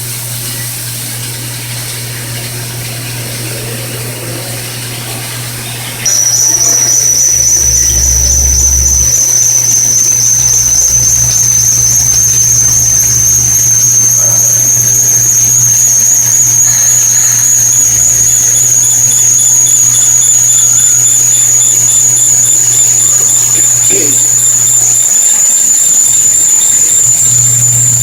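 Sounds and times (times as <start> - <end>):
low machine hum: 0.5 - 28.0
high-pitched milling whine: 1.8 - 28.0.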